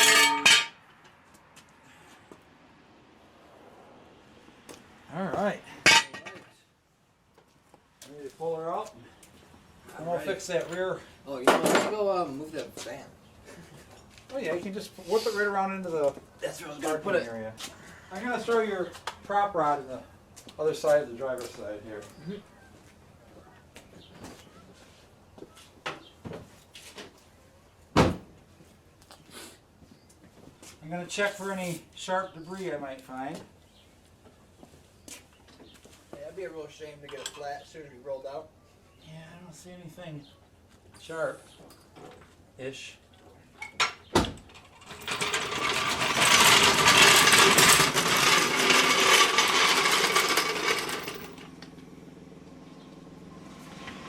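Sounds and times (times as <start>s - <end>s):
mechanical rattling and clattering: 44.4s - 51.5s.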